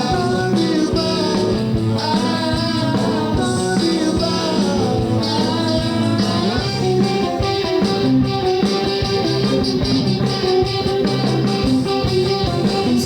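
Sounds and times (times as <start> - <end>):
person singing: 0.0 - 8.0
rock band playing live: 0.0 - 13.0.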